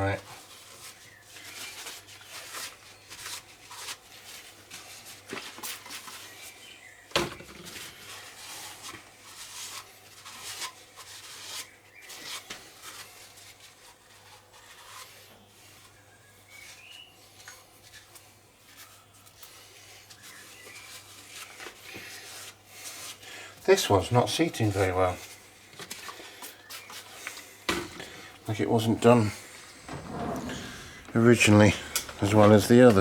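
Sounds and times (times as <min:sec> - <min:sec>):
metal valves clicking and scraping: 0:29.6 - 0:33.0.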